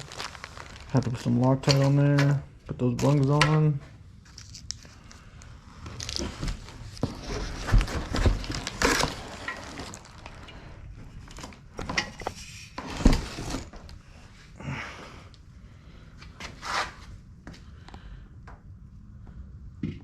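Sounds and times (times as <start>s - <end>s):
small parts and tools clattering: 0.0s - 5.2s, 5.8s - 14.0s.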